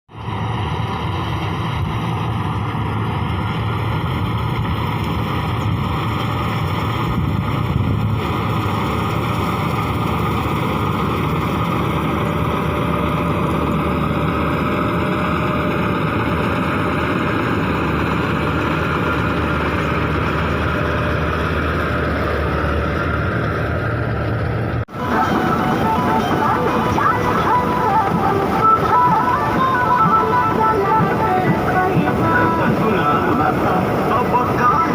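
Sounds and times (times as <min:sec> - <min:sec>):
combine harvester running: 0:00.1 - 0:34.9.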